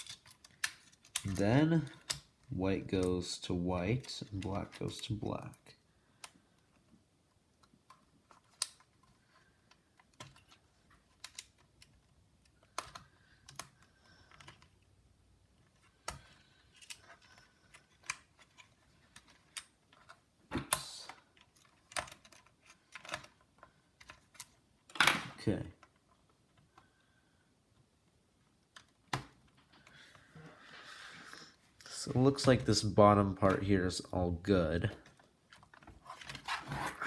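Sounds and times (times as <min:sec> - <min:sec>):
plastic laptop parts clicking: 0:00.0 - 0:02.5, 0:07.5 - 0:14.9, 0:15.6 - 0:25.2.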